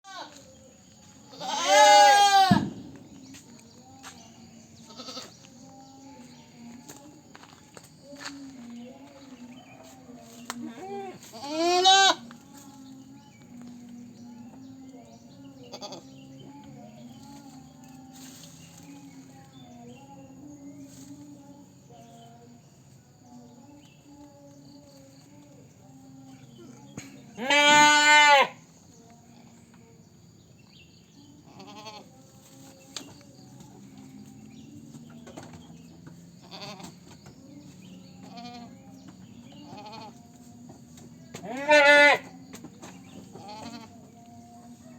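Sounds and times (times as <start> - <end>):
goats bleating: 1.3 - 2.7, 4.9 - 5.3, 10.7 - 12.3, 27.4 - 28.6, 31.5 - 32.1, 36.4 - 37.0, 38.2 - 38.8, 39.6 - 40.2, 41.4 - 42.3, 43.4 - 44.0.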